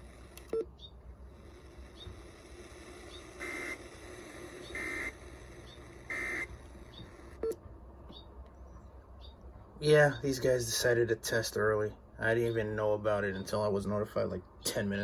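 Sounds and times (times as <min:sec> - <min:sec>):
buzzy digital data bursts: 0:01.7 - 0:07.5.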